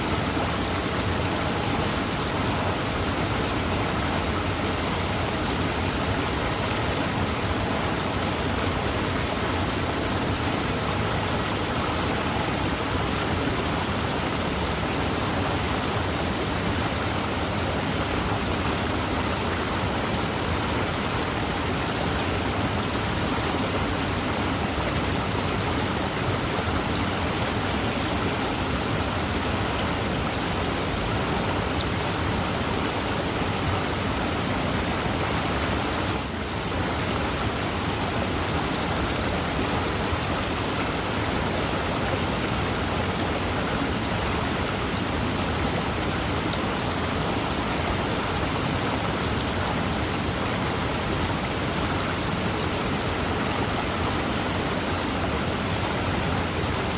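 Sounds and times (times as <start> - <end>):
river water rushing: 0.0 - 56.9.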